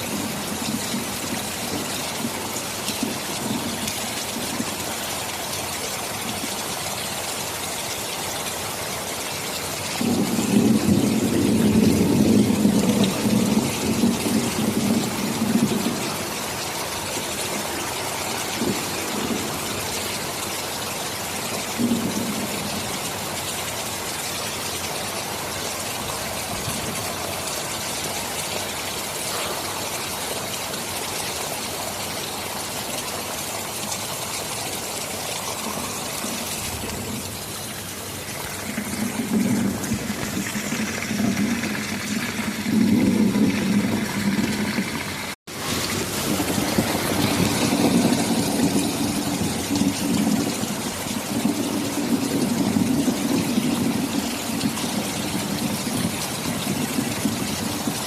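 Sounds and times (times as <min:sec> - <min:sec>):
thunder rumbling: 0:00.0 - 0:05.0, 0:10.0 - 0:20.5, 0:21.7 - 0:23.0, 0:35.0 - 0:58.0
heavy rain hissing: 0:00.0 - 0:58.0.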